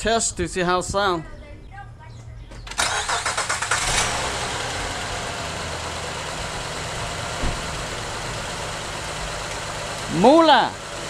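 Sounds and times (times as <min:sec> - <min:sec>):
car engine idling: 0:02.7 - 0:11.0
short thud: 0:07.4 - 0:07.7.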